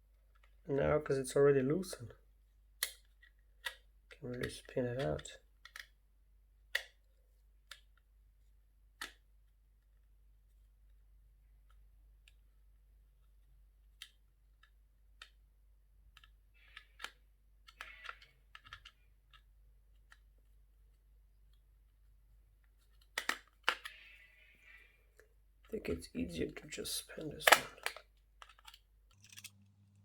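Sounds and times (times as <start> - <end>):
small metal clicks and scrapes: 28.4 - 30.0.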